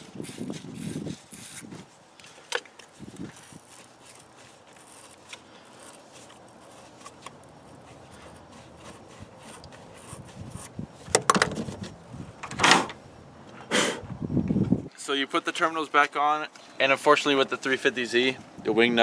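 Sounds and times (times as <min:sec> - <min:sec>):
wire brush scraping battery posts: 0:00.0 - 0:13.7.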